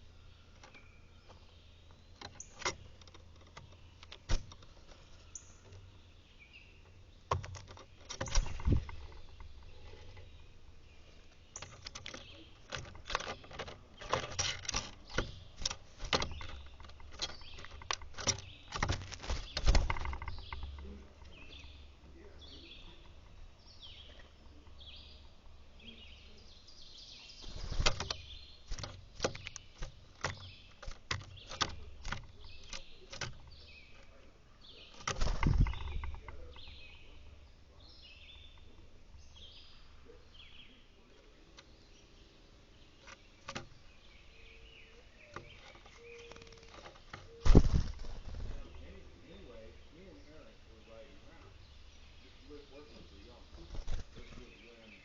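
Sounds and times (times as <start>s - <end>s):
birds chirping: 0.0s - 55.0s
sharp taps and knocks: 7.3s - 10.3s, 11.6s - 21.7s, 27.7s - 34.1s, 34.9s - 36.9s.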